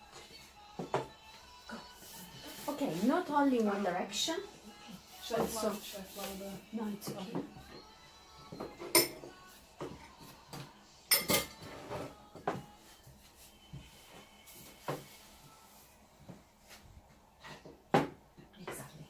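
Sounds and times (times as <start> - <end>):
dishes and utensils clinking: 8.6 - 10.0, 11.1 - 12.6.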